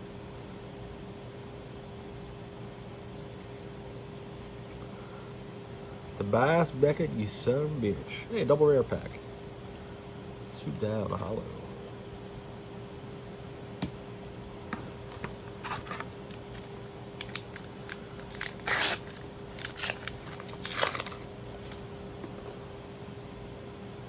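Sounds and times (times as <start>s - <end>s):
foil wrapper crinkling and tearing: 14.9s - 22.6s
cards clicking when handled: 15.1s - 22.4s.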